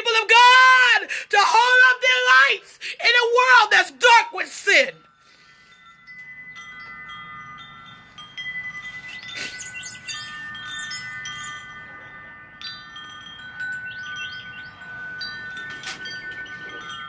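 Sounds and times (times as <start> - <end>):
wind chimes ringing: 4.6 - 17.0
high bird chirps: 9.0 - 11.6, 13.8 - 15.0.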